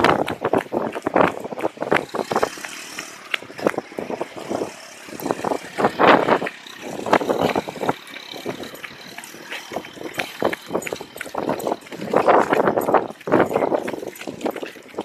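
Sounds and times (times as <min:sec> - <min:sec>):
storm wind gusts: 0:00.0 - 0:08.6.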